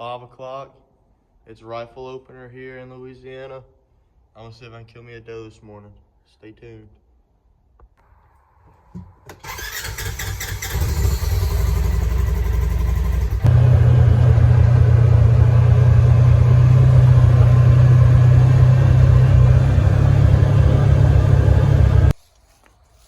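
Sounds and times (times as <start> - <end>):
vehicle engine running: 10.6 - 22.2.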